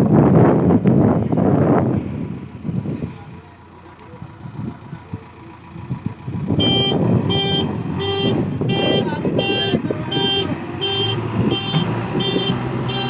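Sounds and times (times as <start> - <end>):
horn-like alarm beeping: 6.6 - 13.0.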